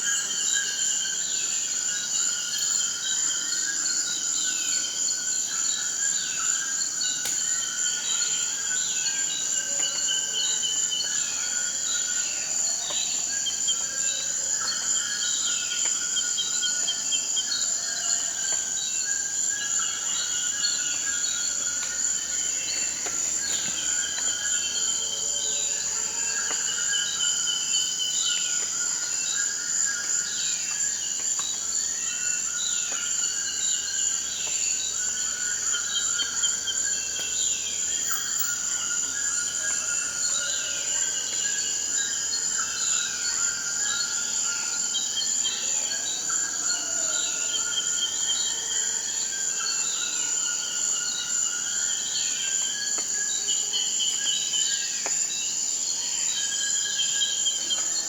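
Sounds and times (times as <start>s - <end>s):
high-pitched insect drone: 35.3s - 41.5s.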